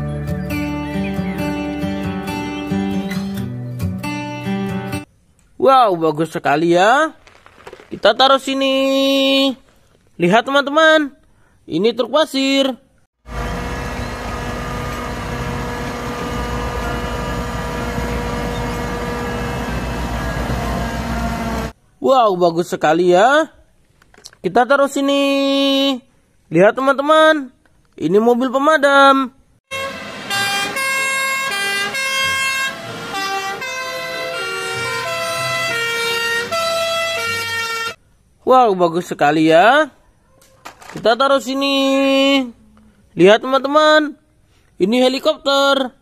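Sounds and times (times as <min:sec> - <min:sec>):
truck engine idling: 0:13.3 - 0:21.7.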